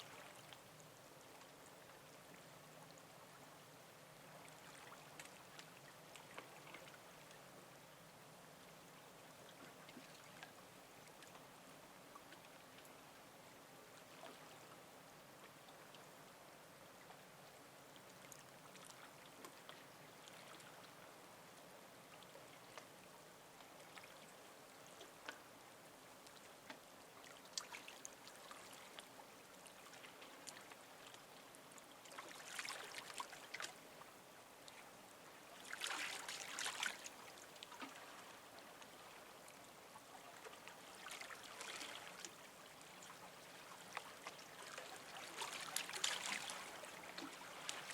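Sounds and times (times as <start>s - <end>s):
small waves lapping: 0.0s - 3.6s, 4.2s - 7.6s, 17.9s - 21.2s, 22.0s - 47.9s.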